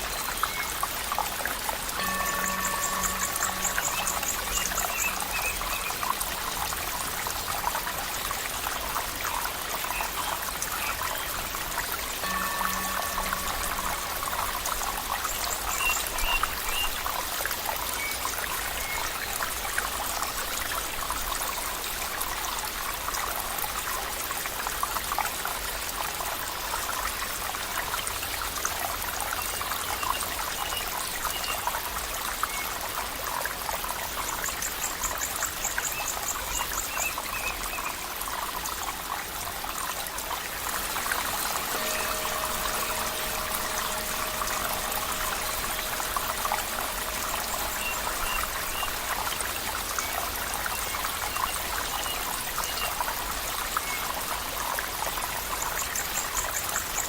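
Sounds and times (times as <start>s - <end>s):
water babbling over rocks: 0.0s - 57.0s
soft musical tone: 1.9s - 7.9s, 9.8s - 17.0s, 40.6s - 52.6s
faint high chirps: 2.0s - 6.1s, 12.2s - 16.9s, 40.8s - 52.9s
fast chirping trill: 40.8s - 51.4s.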